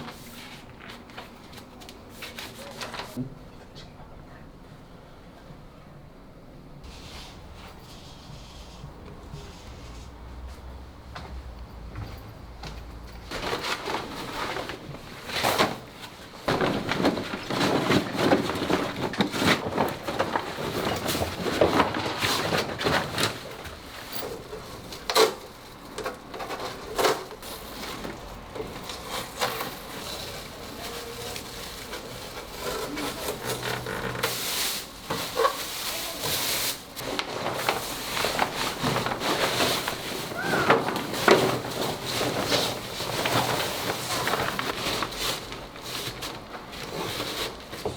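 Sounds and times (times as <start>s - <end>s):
rubbing and rustling: 12.9s - 47.9s.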